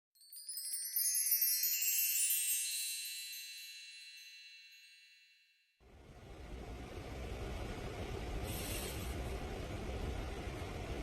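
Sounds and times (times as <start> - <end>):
shimmering bell chime: 0.2 - 5.8.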